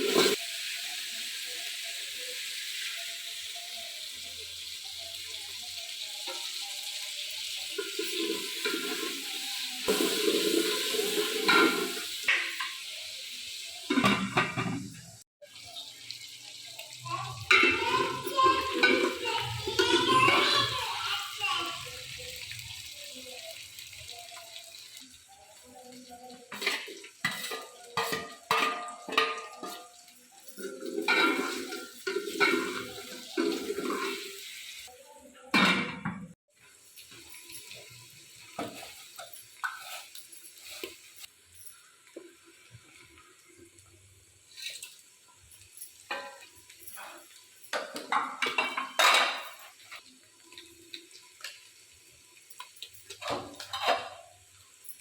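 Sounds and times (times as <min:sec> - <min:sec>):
pots and utensils clattering: 0:00.0 - 0:01.0, 0:04.9 - 0:15.9, 0:16.7 - 0:21.6, 0:25.3 - 0:34.6, 0:35.5 - 0:43.8, 0:44.5 - 0:55.0
running water: 0:00.0 - 0:35.0.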